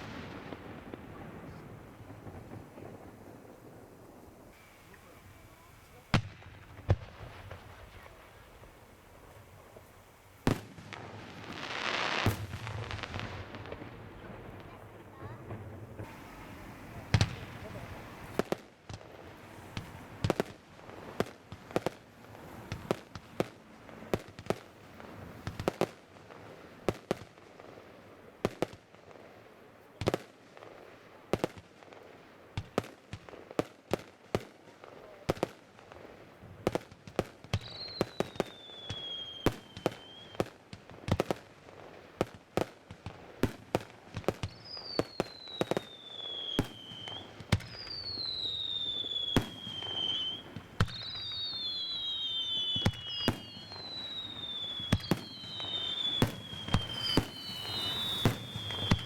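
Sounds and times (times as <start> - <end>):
fireworks bangs and crackling: 0.0 - 59.0
whistling fireworks shells: 4.5 - 14.0, 37.6 - 40.5, 44.3 - 59.0.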